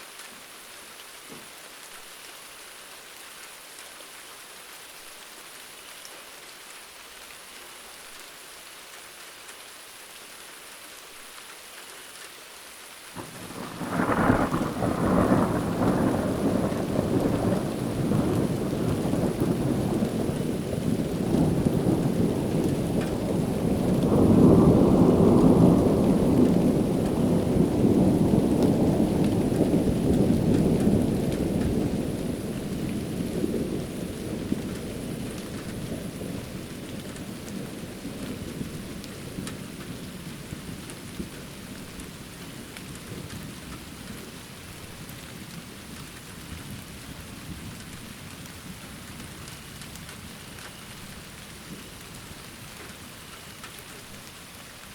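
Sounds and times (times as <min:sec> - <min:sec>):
rain falling: 0:00.0 - 0:54.9
thunder rolling: 0:13.2 - 0:42.0.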